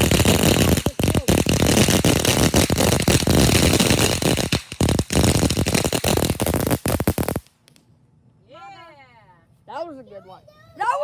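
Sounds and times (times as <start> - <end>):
firework crackling and popping: 0.0 - 7.8.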